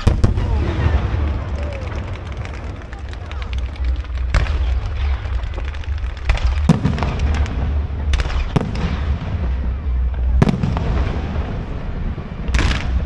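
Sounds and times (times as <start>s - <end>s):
firework shells bursting: 0.0s - 9.1s
fireworks fine crackling: 0.0s - 13.0s
low rumble: 0.0s - 13.0s.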